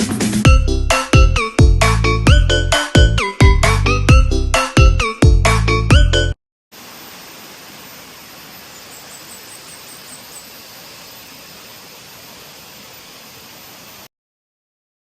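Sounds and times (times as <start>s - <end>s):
waterfall roaring: 6.8s - 9.3s.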